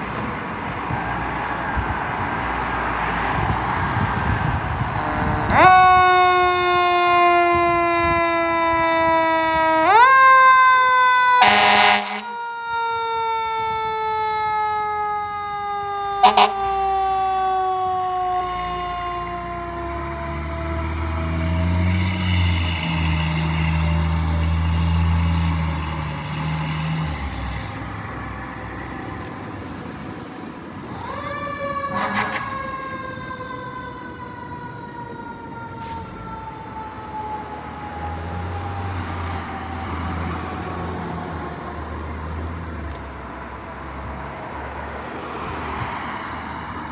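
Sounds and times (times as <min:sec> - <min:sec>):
truck engine rumble: 0:00.0 - 0:32.6
fire truck siren wailing: 0:01.6 - 0:42.6
air horn blast: 0:05.0 - 0:06.7, 0:11.3 - 0:12.4, 0:16.2 - 0:16.8, 0:31.9 - 0:32.6.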